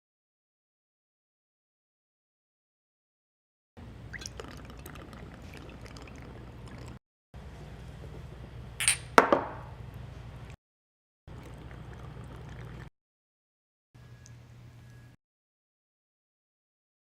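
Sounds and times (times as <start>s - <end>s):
low room hum: 3.8s - 10.6s, 11.3s - 12.9s, 14.0s - 15.2s.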